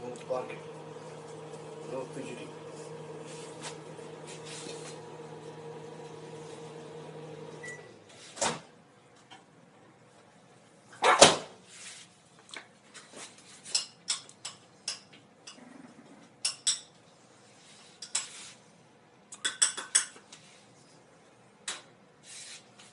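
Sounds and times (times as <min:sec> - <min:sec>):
kitchen appliance humming: 0:00.0 - 0:08.2
clicks and taps of dishes: 0:13.7 - 0:15.6, 0:19.4 - 0:20.2.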